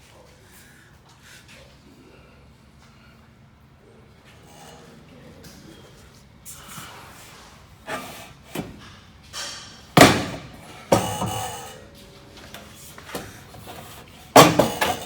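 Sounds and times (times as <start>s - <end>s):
knocks on metal door frame: 10.0s - 11.6s, 14.4s - 15.0s
metallic ring: 10.9s - 11.9s.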